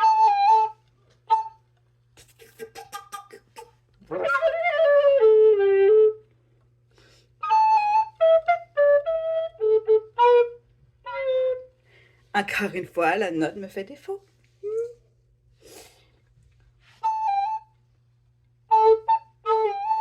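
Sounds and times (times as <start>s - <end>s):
flute playing a tune: 0.0s - 1.7s, 4.0s - 6.3s, 7.4s - 11.8s, 16.9s - 20.0s.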